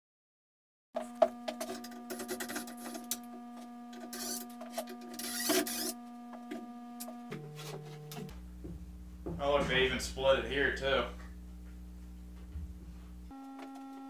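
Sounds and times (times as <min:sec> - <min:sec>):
scraping on wood: 0:01.0 - 0:08.3
low electrical hum: 0:01.0 - 0:14.0.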